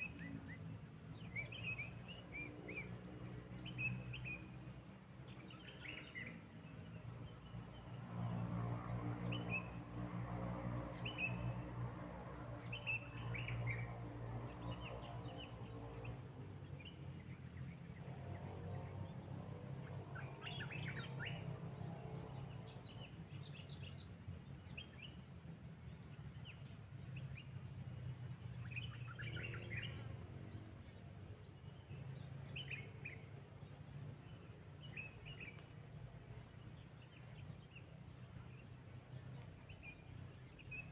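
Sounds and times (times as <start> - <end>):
low steady hum: 0.0 - 40.9.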